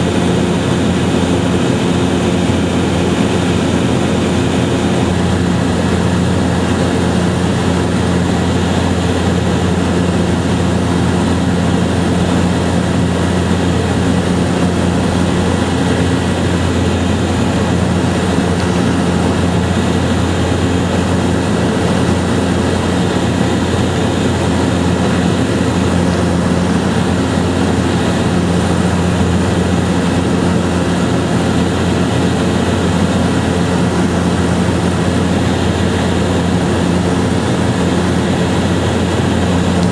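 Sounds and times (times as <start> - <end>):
loud engine drone: 0.0 - 39.9.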